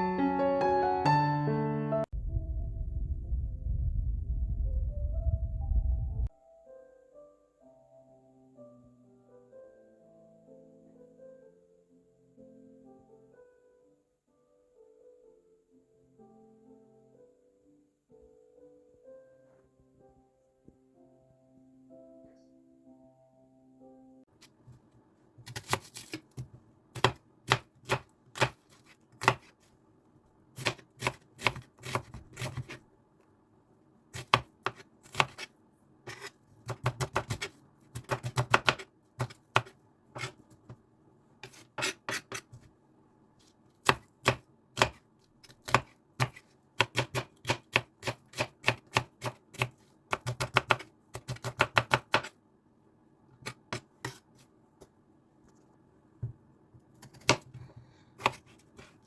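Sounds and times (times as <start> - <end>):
faint steady hum: 2.1 - 6.3
knife chopping on cutting board: 25.4 - 29.6, 30.6 - 32.8, 34.2 - 35.5, 36.1 - 40.5, 41.4 - 42.7, 43.8 - 52.3, 57.0 - 57.6, 58.2 - 58.9.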